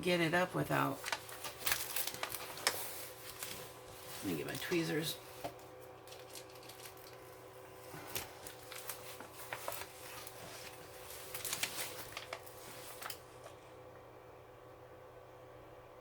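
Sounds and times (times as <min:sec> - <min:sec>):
canvas handling noises: 0:00.7 - 0:13.5
plastic film crinkling: 0:00.7 - 0:13.6.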